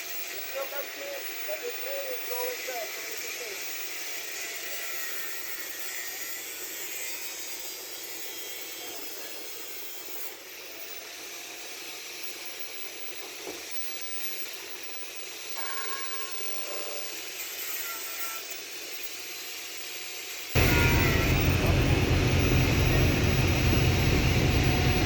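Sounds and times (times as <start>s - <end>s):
angle grinder cutting hose: 20.6s - 25.0s.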